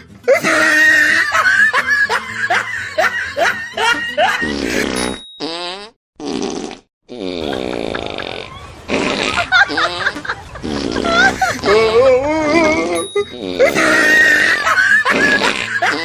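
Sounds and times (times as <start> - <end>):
laughter: 0.3 - 4.6, 7.4 - 16.0
fart sound effects: 4.4 - 16.0.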